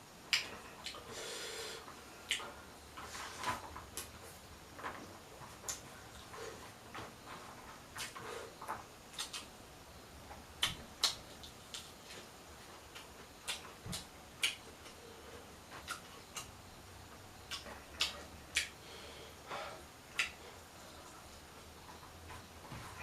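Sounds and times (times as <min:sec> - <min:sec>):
mouth clicks and smacks: 0:00.3 - 0:01.0, 0:02.3 - 0:02.5, 0:08.0 - 0:09.5, 0:10.6 - 0:11.9, 0:12.9 - 0:15.0, 0:15.8 - 0:16.6, 0:17.5 - 0:18.8, 0:20.1 - 0:20.4.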